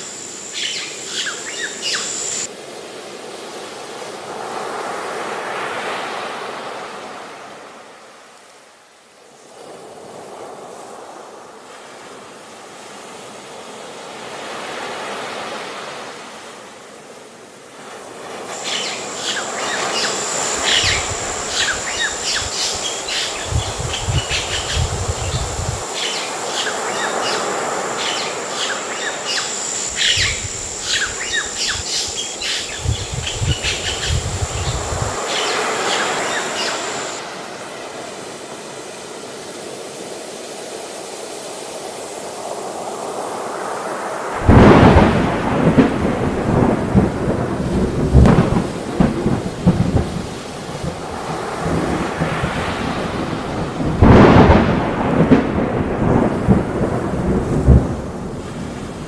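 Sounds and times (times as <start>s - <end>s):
waves washing softly: 0.0s - 59.0s
bird chirps: 0.5s - 2.5s, 18.6s - 37.2s
steady high-pitched tone: 18.5s - 37.3s.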